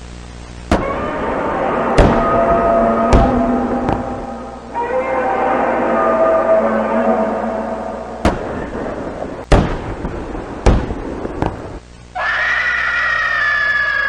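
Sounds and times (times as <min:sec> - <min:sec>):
noisy background: 0:00.6 - 0:11.1
sharp bangs: 0:00.7 - 0:09.9
steady high tone: 0:00.8 - 0:09.4.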